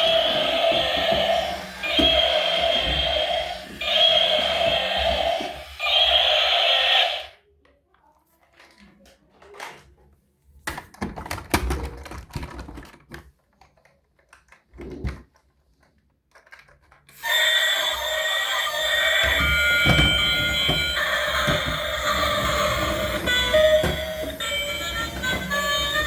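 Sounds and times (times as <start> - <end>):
toy electronic buzzing tones: 0.0 - 7.3, 17.2 - 26.0
plastic toy vehicles clicking: 7.9 - 26.0.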